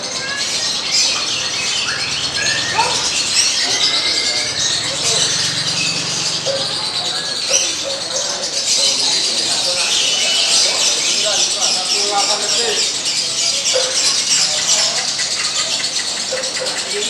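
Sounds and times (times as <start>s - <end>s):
lovebirds chirping: 0.0s - 17.0s
background voices: 0.6s - 13.7s.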